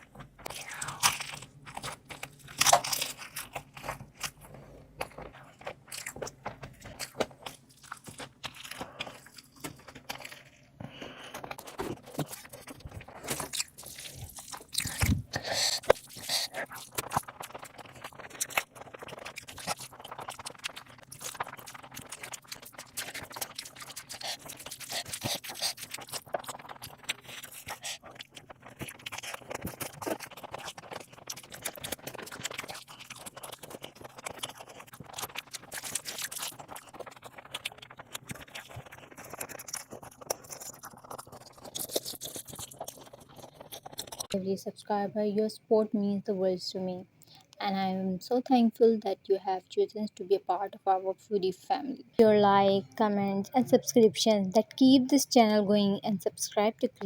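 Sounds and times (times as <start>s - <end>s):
person chewing and crunching: 0.0s - 44.4s.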